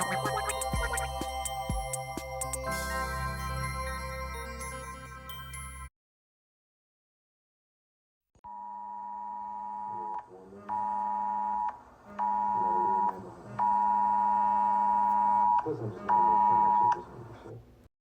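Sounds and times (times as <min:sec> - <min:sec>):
two-tone alarm signal: 0:00.0 - 0:03.6, 0:08.5 - 0:17.0.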